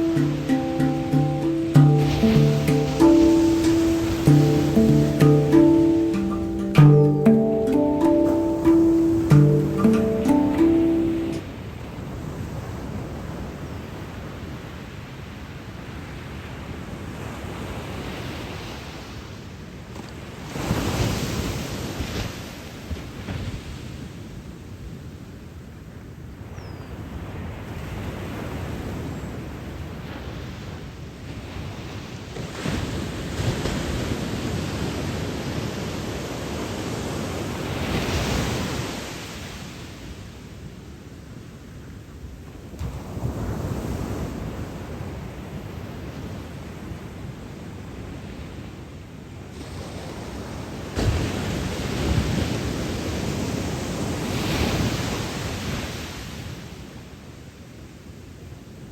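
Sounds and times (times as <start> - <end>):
ocean waves rushing: 0.0 - 11.4.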